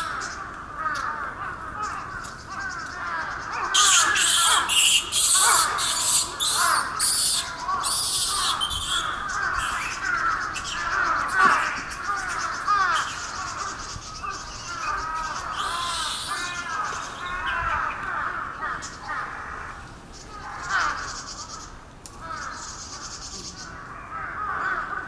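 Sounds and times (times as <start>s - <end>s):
monkeys giving coo calls: 3.6s - 17.6s.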